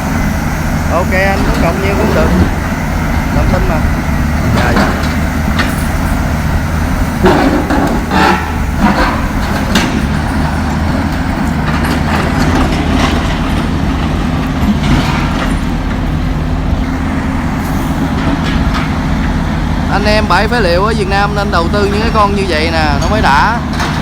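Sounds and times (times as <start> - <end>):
excavator diesel engine running: 0.0 - 24.0
metal clanks and knocks: 3.4 - 16.2, 18.2 - 19.4, 23.0 - 24.0.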